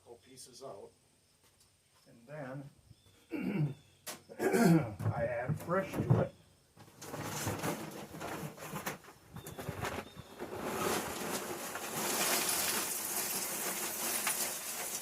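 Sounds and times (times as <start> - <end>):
charcoal clattering into metal chimney: 6.9 - 15.0
rattling rush of small bits: 7.0 - 15.0.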